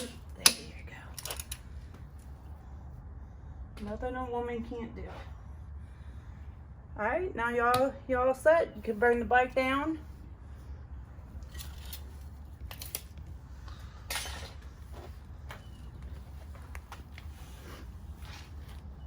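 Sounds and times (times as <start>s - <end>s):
light metallic clicks and clinks: 0.0s - 2.3s
low steady rumble: 0.0s - 19.0s.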